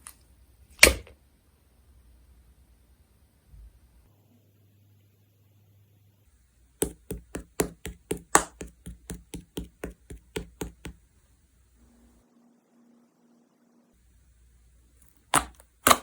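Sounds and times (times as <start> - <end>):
slime popping: 6.8 - 11.0, 15.3 - 16.0.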